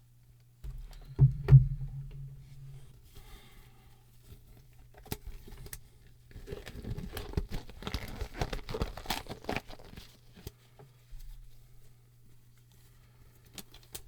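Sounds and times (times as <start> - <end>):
rubber gloves crinkling: 6.4 - 10.3.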